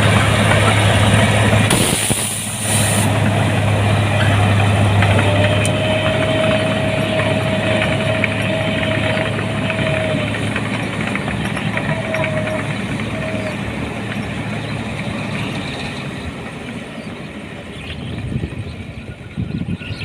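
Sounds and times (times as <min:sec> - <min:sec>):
harvester engine humming: 0:00.0 - 0:20.0.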